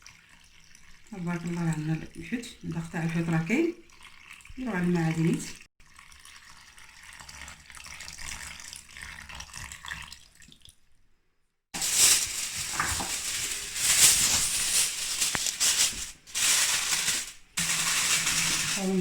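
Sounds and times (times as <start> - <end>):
liquid pouring into pan: 16.8 - 18.8.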